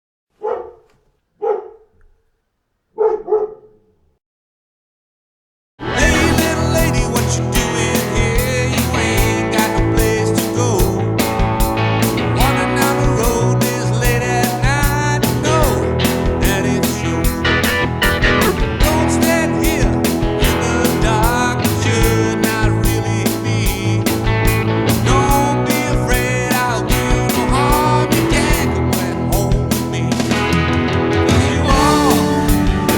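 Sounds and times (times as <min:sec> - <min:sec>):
person singing: 0:05.8 - 0:11.3, 0:12.2 - 0:32.9
guitar: 0:05.8 - 0:32.9
drum beat: 0:06.0 - 0:32.9.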